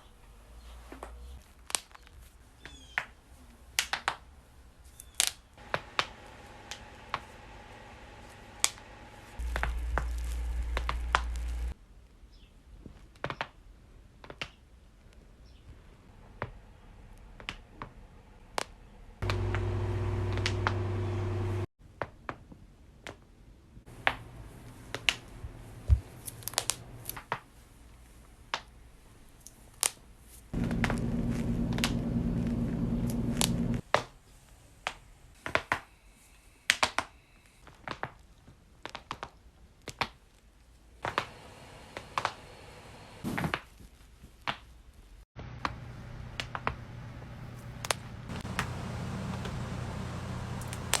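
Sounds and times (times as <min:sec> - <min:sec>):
low electric buzz: 0:05.6 - 0:11.8, 0:19.2 - 0:21.7, 0:30.6 - 0:33.8, 0:41.1 - 0:43.2, 0:45.4 - 0:51.0
joints cracking and popping: 0:50.5 - 0:51.0.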